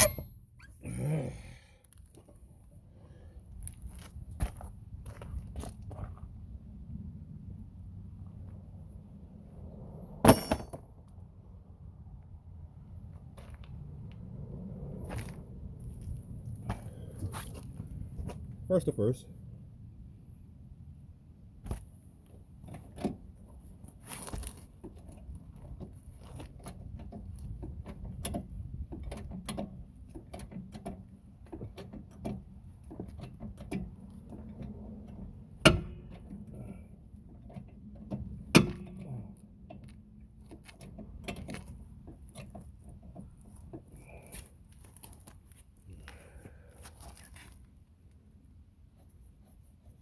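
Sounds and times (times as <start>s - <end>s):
sharp metallic clanks: 0.0s - 0.8s, 10.2s - 10.9s.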